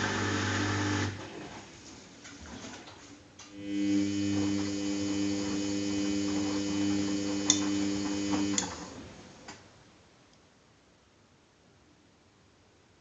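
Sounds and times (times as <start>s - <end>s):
washing machine humming: 0.0s - 9.6s.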